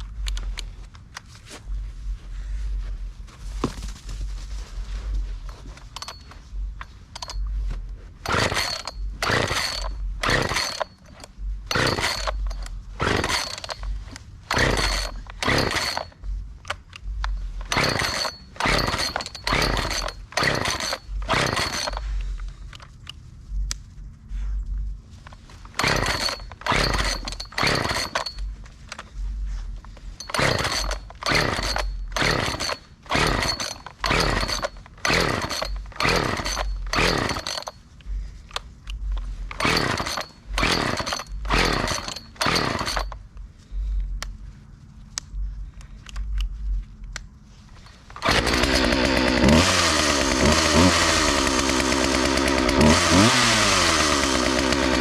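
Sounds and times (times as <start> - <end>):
chainsaw engine turning over: 5.5 - 7.5, 8.2 - 22.9, 25.2 - 29.1, 29.9 - 43.2, 47.7 - 55.0
chainsaw recoil starter yanked: 5.8 - 7.5, 8.2 - 23.2, 25.2 - 29.1, 30.1 - 37.8, 38.5 - 43.2, 47.8 - 55.0.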